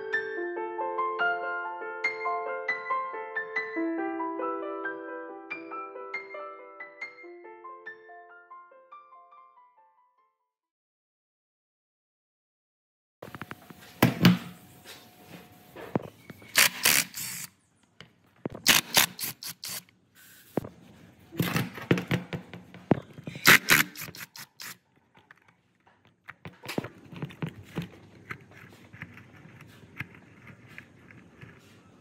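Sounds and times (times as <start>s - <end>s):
metal parts scraping and clinking: 16.4s - 17.5s, 18.6s - 19.8s.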